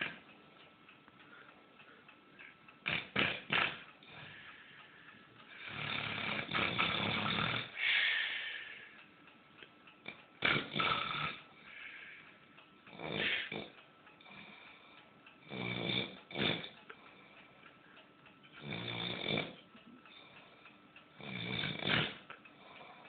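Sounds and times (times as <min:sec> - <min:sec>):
person snoring and snorting: 0:02.8 - 0:04.3, 0:05.5 - 0:08.1, 0:10.1 - 0:11.5, 0:12.9 - 0:14.7, 0:15.4 - 0:16.8, 0:18.6 - 0:19.6, 0:21.2 - 0:22.2.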